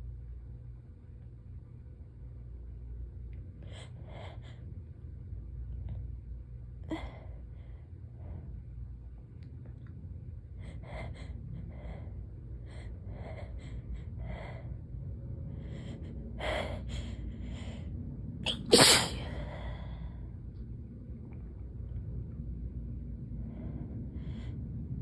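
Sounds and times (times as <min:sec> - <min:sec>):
loud sneeze: 0:18.5 - 0:19.3.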